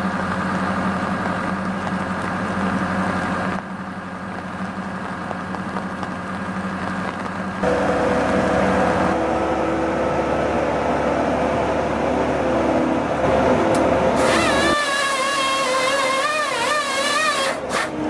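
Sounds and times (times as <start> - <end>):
heavy machinery engine running: 0.0 - 18.0
high wavering whine: 7.6 - 18.0.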